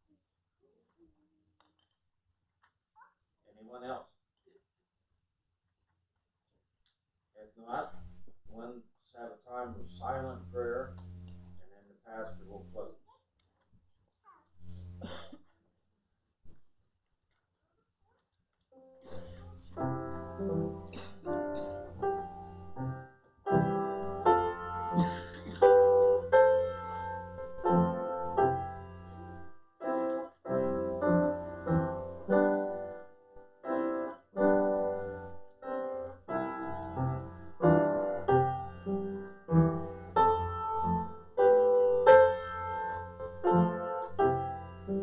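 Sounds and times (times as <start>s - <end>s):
piano playing slow chords: 18.8s - 45.0s.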